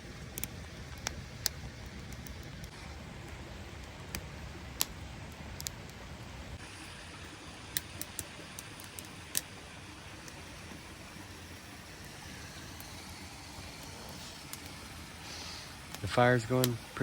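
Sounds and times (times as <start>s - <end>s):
campfire crackling and popping: 0.0s - 17.0s.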